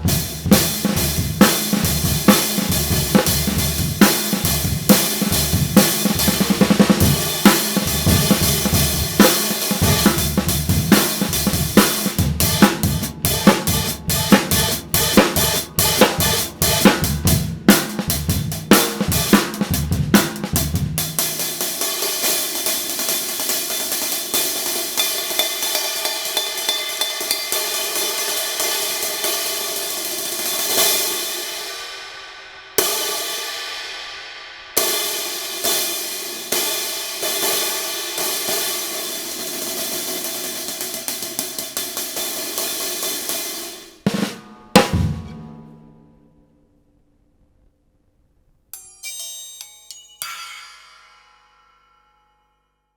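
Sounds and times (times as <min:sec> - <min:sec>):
snare drum: 0:00.0 - 0:27.9, 0:38.5 - 0:45.4
hi-hat cymbals: 0:00.0 - 0:44.1
open hi-hat strikes: 0:00.0 - 0:46.2, 0:48.7 - 0:52.6.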